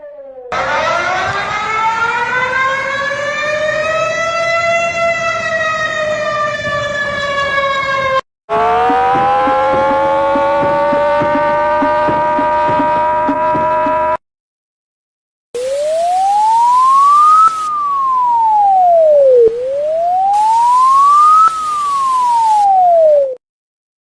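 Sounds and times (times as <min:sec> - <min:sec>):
warning siren wailing: 0:00.0 - 0:14.2, 0:15.6 - 0:23.4
warning siren winding up: 0:00.0 - 0:14.2, 0:15.6 - 0:23.4
low pulse: 0:08.5 - 0:14.2, 0:15.6 - 0:23.4.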